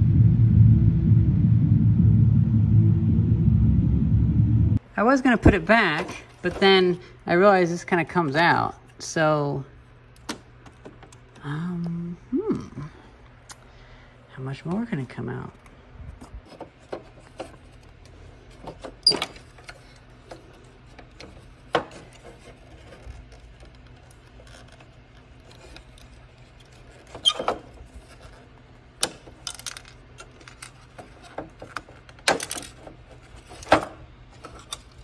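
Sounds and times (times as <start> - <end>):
faint low hum: 0.0 - 7.6.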